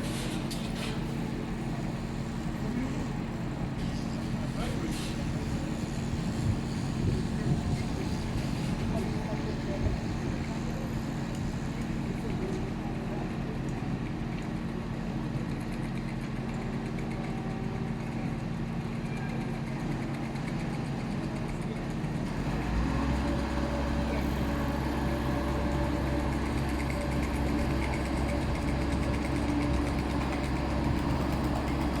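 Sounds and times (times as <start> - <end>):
engine idling and revving: 22.1 - 32.0.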